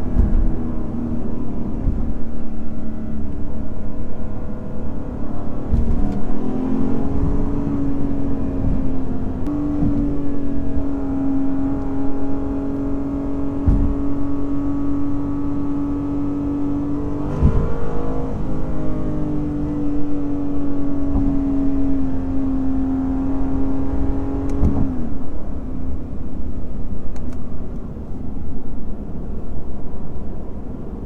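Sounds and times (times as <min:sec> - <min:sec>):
car engine running: 0:00.0 - 0:31.0.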